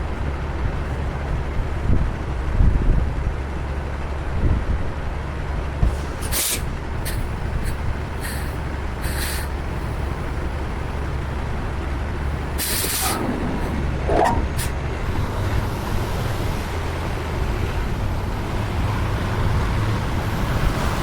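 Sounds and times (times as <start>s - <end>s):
diesel truck engine idling: 4.9s - 20.7s
compressed air hissing: 6.2s - 10.0s, 12.5s - 14.8s
low thumps: 12.8s - 15.0s.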